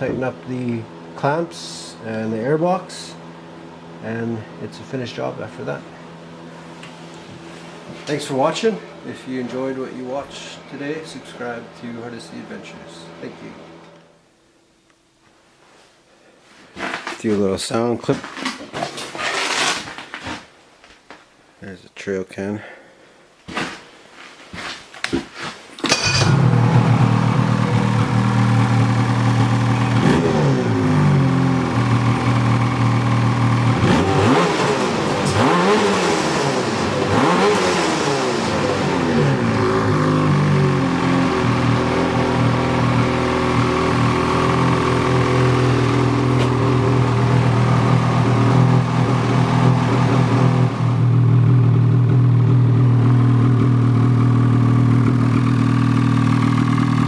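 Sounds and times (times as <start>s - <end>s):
snowmobile engine revving and idling: 25.9s - 57.0s.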